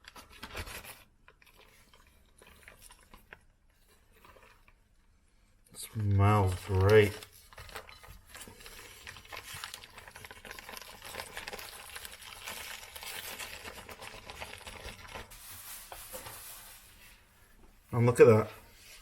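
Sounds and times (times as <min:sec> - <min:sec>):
plastic bags crinkling: 0:05.8 - 0:17.0.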